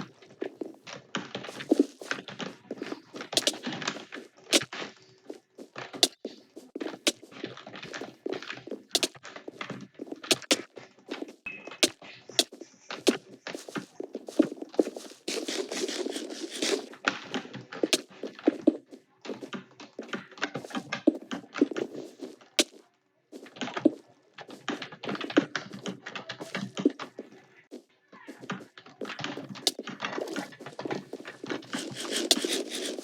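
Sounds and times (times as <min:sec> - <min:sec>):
keyboard typing: 0:13.1 - 0:16.9, 0:31.6 - 0:33.0.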